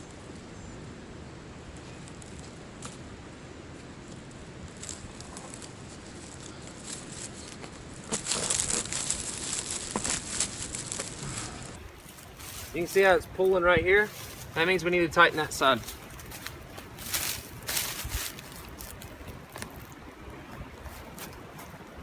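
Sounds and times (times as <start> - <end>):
faint outdoor background: 0.0 - 22.0
crackly rustling and scuffing: 4.1 - 22.0.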